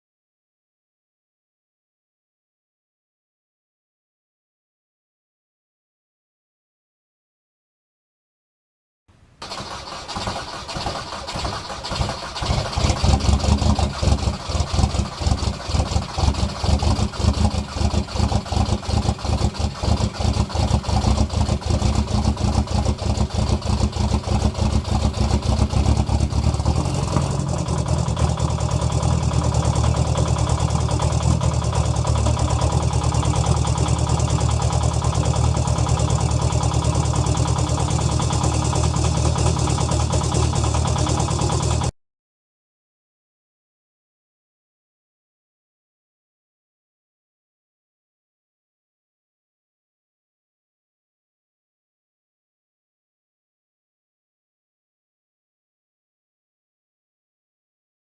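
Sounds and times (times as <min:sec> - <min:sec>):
diesel engine starting rough: 0:09.4 - 0:41.9.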